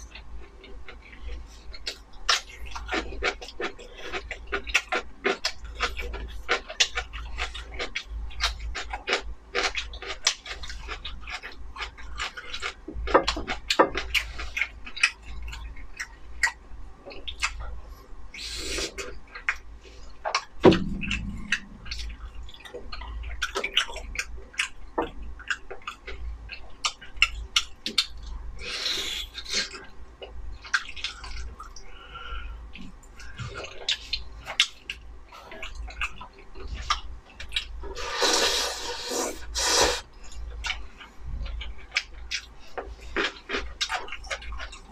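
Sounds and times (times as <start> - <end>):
wet chewing with mouth clicks: 0.0 - 32.1, 32.7 - 44.9
slurps: 37.9 - 40.1.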